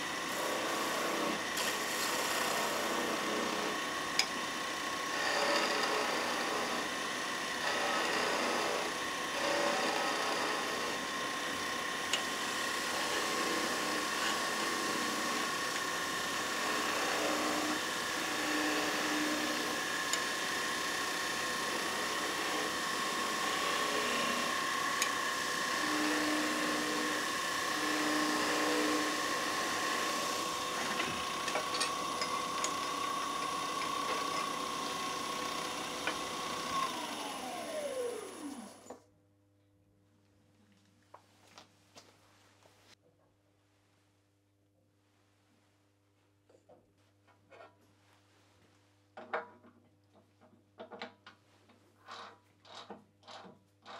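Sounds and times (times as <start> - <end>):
lathe whining: 0.0 - 39.0
turning tool cutting wood: 0.0 - 39.0.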